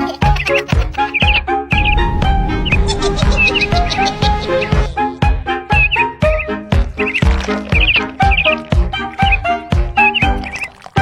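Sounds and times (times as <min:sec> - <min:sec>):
upbeat music with steady beat: 0:00.0 - 0:10.6
wavering high notes: 0:01.7 - 0:05.0.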